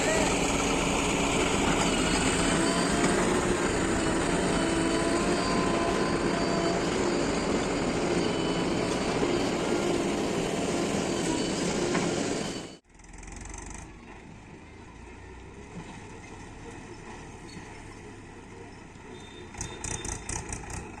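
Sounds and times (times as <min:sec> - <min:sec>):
diesel engines running under load: 0:00.0 - 0:21.0.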